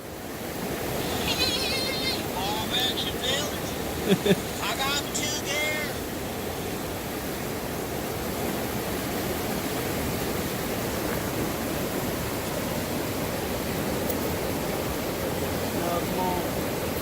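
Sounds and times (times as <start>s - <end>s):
fast-flowing stream water: 0.0s - 17.0s.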